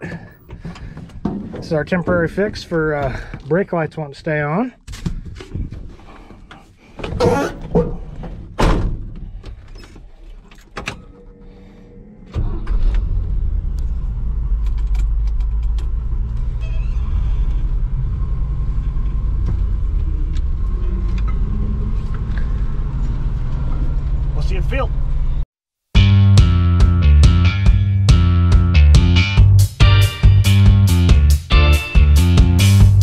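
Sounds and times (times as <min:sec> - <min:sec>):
truck engine rumbling: 0:00.0 - 0:03.8, 0:07.1 - 0:25.4.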